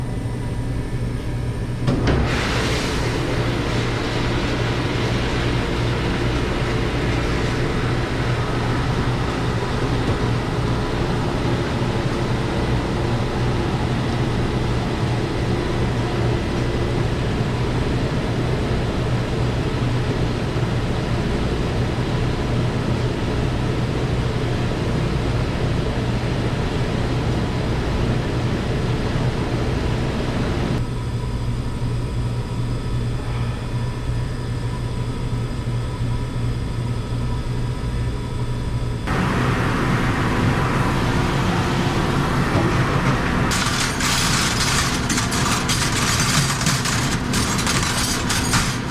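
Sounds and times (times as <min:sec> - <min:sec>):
dish machine low hum: 0:00.0 - 0:17.3, 0:33.1 - 0:48.9.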